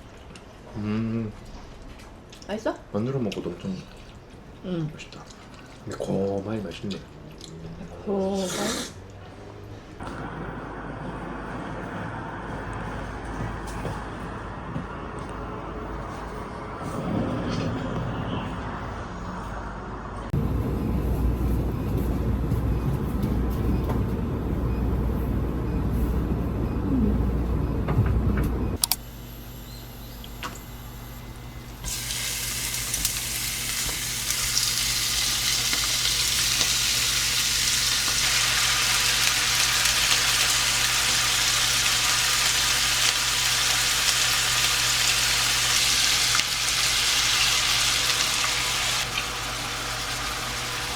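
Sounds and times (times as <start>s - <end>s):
low rumble: 16.5s - 28.8s
steady hum: 20.1s - 50.9s
food sizzling in a pan: 31.9s - 50.9s.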